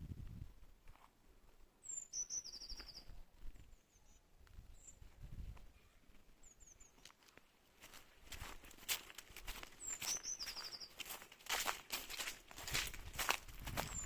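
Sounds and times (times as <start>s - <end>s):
songbird singing: 1.7s - 8.3s, 9.5s - 12.3s, 13.7s - 14.0s.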